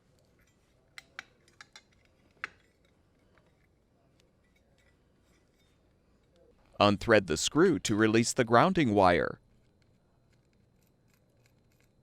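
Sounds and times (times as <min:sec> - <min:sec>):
faint sharp clicks of wire nuts: 0:01.0 - 0:02.6.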